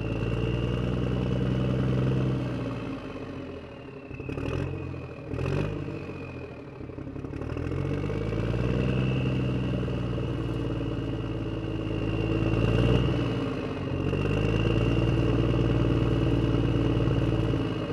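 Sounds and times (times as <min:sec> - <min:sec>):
truck engine revving: 0:07.3 - 0:17.9.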